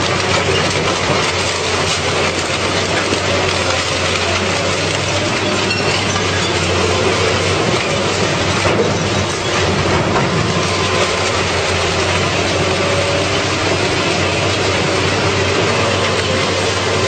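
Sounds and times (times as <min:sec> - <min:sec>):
car-scrapping machine crushing car: 0:00.0 - 0:12.6.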